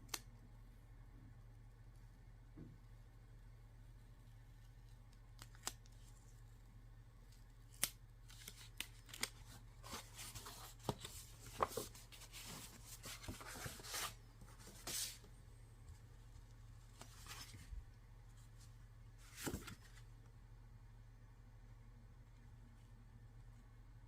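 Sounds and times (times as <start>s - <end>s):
paper packaging rustling: 8.3s - 15.3s.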